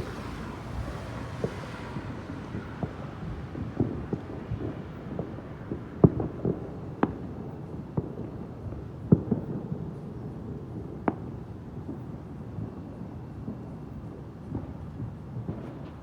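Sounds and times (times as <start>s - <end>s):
fireworks bangs: 14.5s - 16.0s.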